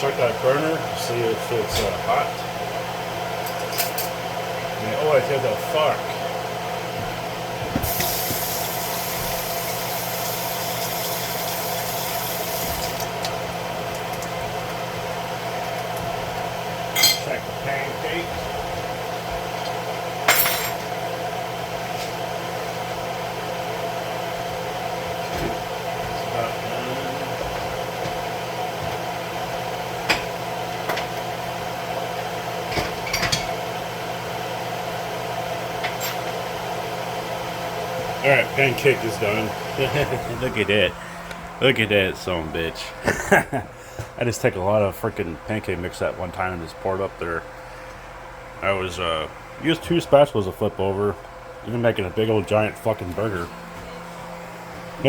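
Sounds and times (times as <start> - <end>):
mechanical hum: 0.0 - 55.0
utensils clinking against pan: 17.0 - 17.3.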